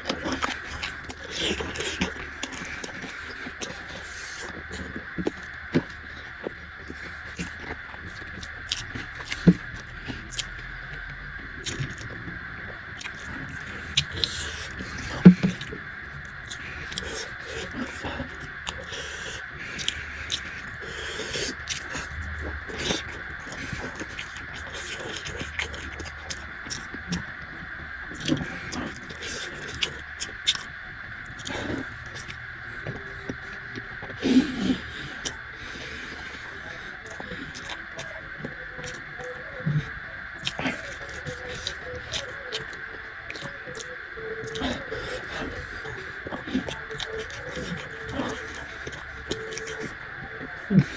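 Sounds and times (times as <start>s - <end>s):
wet mouth clicks: 0.0s - 10.7s, 11.6s - 12.2s, 13.0s - 27.3s, 28.2s - 30.7s, 31.3s - 33.4s, 34.0s - 50.0s
chewing: 0.0s - 50.9s
steady background hiss: 0.0s - 50.9s.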